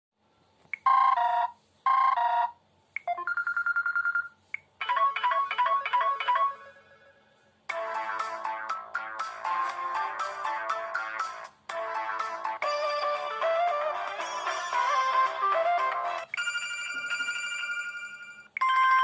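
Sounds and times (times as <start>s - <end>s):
ringtone melody: 4.8s - 19.0s.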